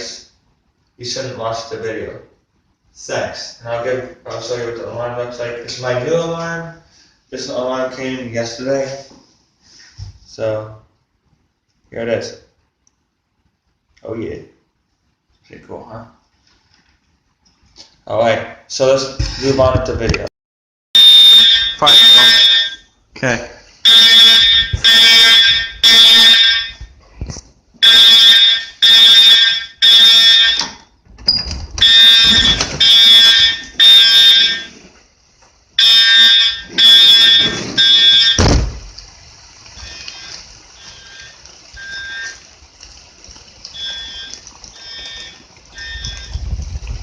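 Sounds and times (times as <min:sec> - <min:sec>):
fire alarm horn blasts: 0:21.0 - 0:22.9, 0:23.8 - 0:26.9, 0:27.8 - 0:30.8, 0:31.8 - 0:34.8, 0:35.8 - 0:38.6, 0:39.8 - 0:42.5, 0:43.7 - 0:46.4
thump: 0:38.4 - 0:38.9.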